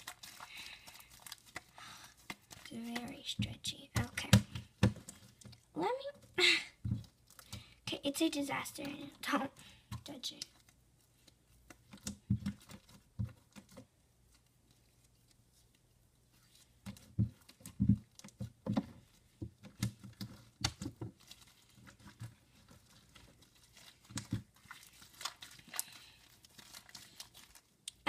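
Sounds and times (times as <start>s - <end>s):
slime squelching by hand: 0.0s - 28.0s.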